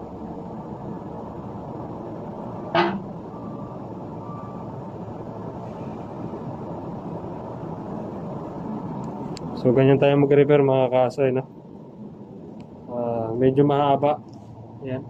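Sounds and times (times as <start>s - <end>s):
short sharp sound: 2.7s - 3.1s.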